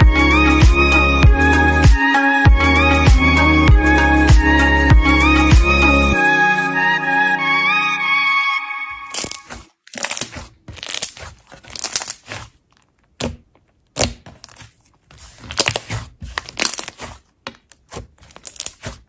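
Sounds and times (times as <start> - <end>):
slime squished by hand: 9.1 - 19.0.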